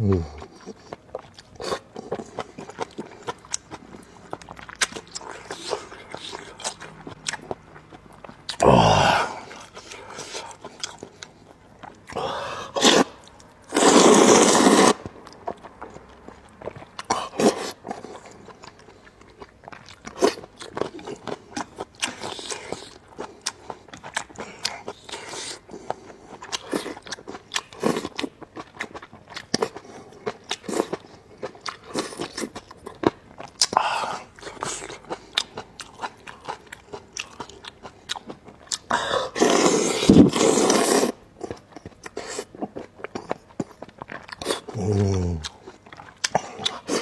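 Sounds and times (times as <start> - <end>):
wet chewing clicks and smacks: 0.4 - 8.6, 9.5 - 12.2, 15.0 - 38.9, 41.4 - 47.0
noodles slurping: 12.2 - 15.0.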